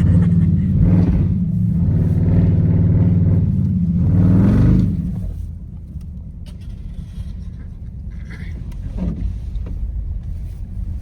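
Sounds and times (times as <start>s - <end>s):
car engine revving hard: 0.0s - 5.3s.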